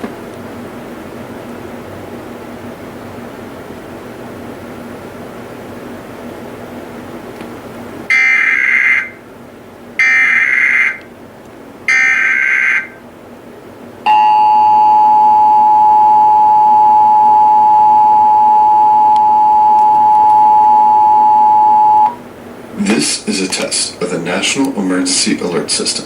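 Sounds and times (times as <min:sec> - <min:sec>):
two-tone attention signal: 0:14.1 - 0:22.2.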